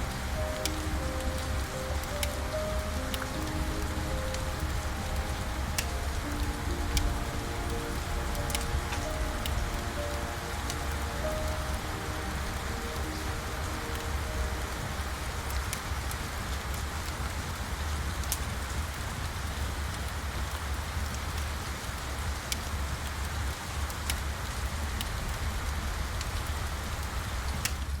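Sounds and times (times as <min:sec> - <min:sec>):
steady rain: 0:00.0 - 0:28.0.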